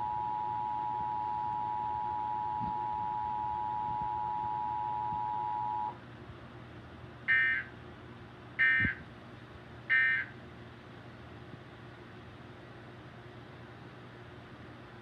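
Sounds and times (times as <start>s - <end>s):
two-tone alert signal: 0.0s - 5.9s.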